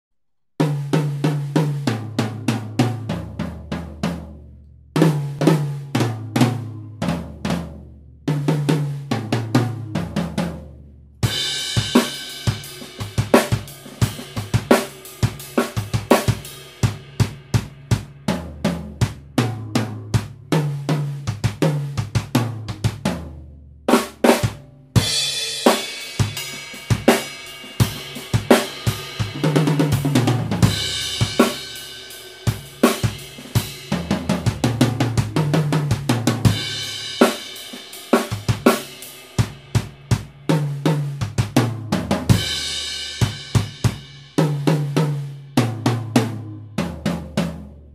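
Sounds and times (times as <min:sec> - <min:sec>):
drum kit groove: 0:00.6 - 0:47.9.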